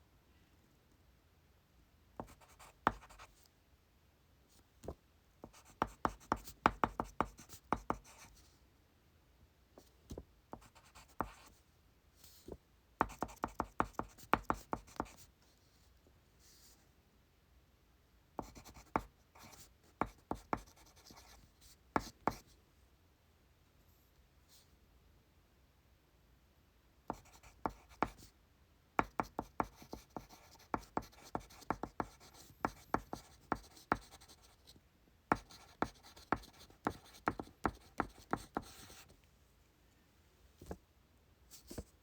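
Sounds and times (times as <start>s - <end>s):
pen writing on paper: 2.2s - 3.3s, 5.4s - 8.3s, 10.6s - 11.5s, 13.0s - 15.2s, 18.4s - 21.4s, 27.1s - 28.3s, 29.0s - 34.6s, 35.3s - 39.0s.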